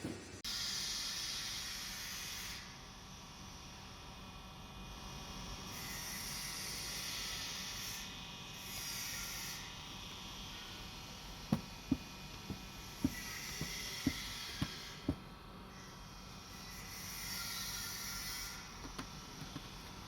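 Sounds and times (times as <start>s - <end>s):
light knocks: 11.5s - 15.2s.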